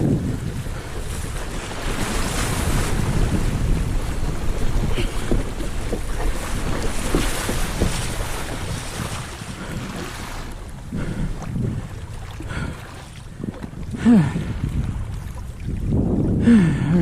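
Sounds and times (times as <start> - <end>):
water splashing along kayak hull: 0.0 - 17.0
wind buffeting microphone: 0.0 - 17.0.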